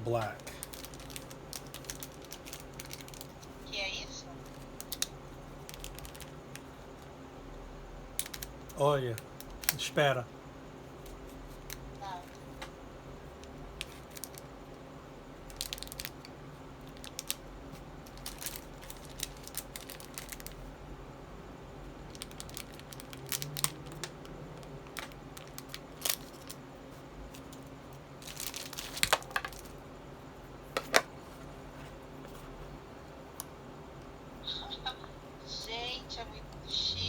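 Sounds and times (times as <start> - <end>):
packaging crinkling and tearing: 0.3 - 3.6, 4.4 - 6.7, 8.2 - 8.5, 13.8 - 14.5, 15.5 - 17.4, 18.0 - 20.7, 22.1 - 26.6, 27.3 - 29.8.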